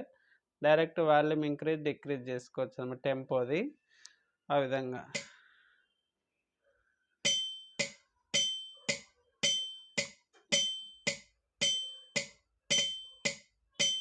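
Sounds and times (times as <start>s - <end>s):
metronome ticking: 7.3s - 14.0s.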